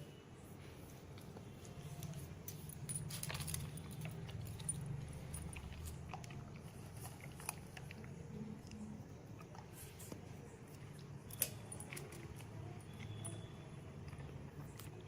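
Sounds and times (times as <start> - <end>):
light jangle: 1.6 - 7.6, 10.8 - 14.2
dog chewing food: 3.3 - 15.0.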